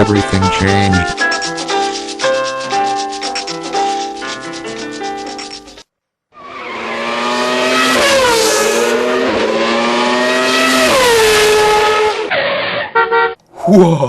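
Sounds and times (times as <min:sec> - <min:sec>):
music: 0:00.0 - 0:05.8
car engine at high revs: 0:06.4 - 0:12.3.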